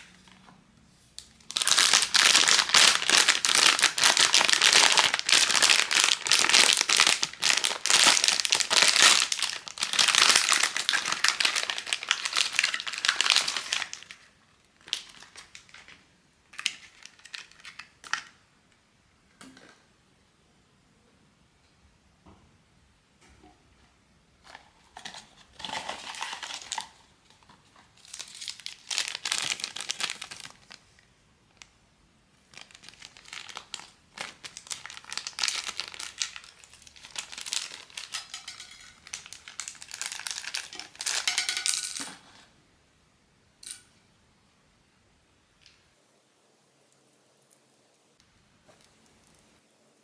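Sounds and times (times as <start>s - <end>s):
packaging crinkling and rustling: 1.2s - 18.4s, 24.4s - 31.7s, 32.5s - 42.4s.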